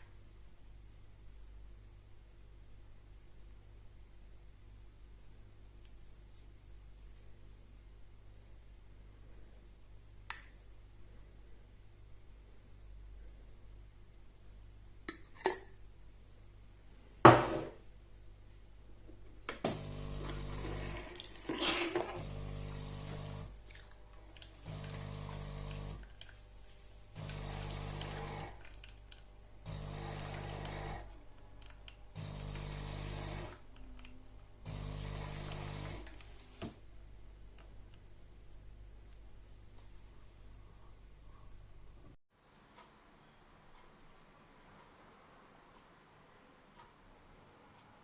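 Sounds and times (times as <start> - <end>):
espresso pump humming in pulses: 19.7 - 21.1, 21.9 - 23.6, 24.5 - 26.2, 27.1 - 28.7, 29.6 - 31.2, 32.2 - 33.6, 34.6 - 36.2.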